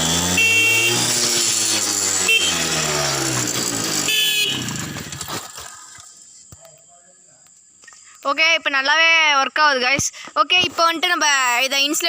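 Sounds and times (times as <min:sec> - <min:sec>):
electric horn falling tones: 0:00.0 - 0:05.4.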